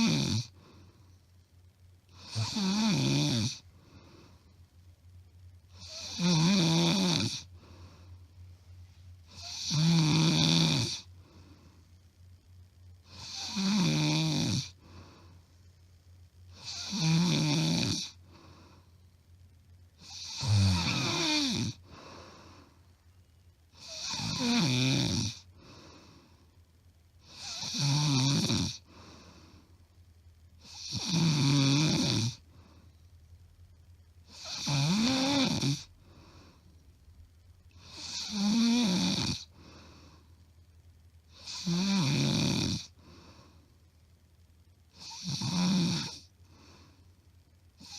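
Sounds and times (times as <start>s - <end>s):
woman snoring loudly: 0.0s - 0.6s, 2.1s - 3.6s, 5.8s - 7.5s, 9.3s - 11.1s, 13.1s - 14.8s, 16.6s - 18.2s, 20.0s - 22.1s, 23.8s - 25.5s, 27.3s - 28.9s, 30.6s - 32.4s, 34.3s - 35.9s, 37.8s - 39.5s, 41.4s - 43.0s, 45.0s - 46.3s
soft breaths: 0.0s - 2.2s, 3.6s - 6.0s, 7.4s - 9.5s, 11.0s - 13.1s, 14.7s - 16.5s, 18.1s - 19.8s, 20.8s - 23.3s, 25.4s - 27.3s, 28.8s - 30.4s, 32.4s - 33.8s, 35.3s - 38.0s, 39.4s - 41.2s, 42.9s - 44.4s, 46.2s - 47.9s.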